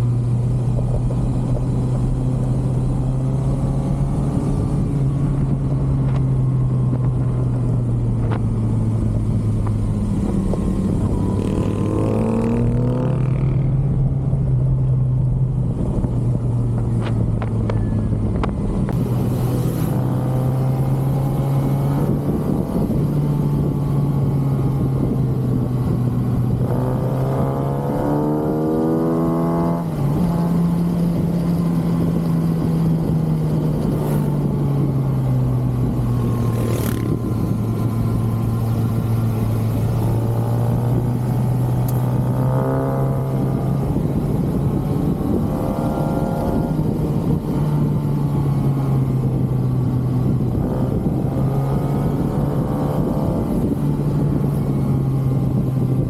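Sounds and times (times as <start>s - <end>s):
motorcycle engine revving: 8.2s - 14.1s, 18.9s - 56.0s.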